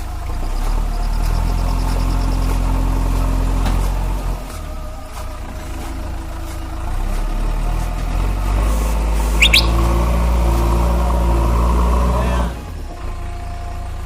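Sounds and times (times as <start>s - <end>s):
diesel engine running: 0.0s - 14.0s
brief high chirp: 9.4s - 9.9s.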